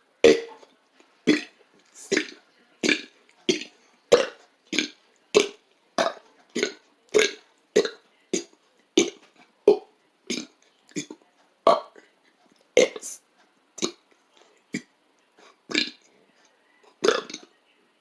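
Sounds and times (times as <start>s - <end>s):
man burping: 0.2s - 0.5s, 2.1s - 6.2s, 17.0s - 17.4s.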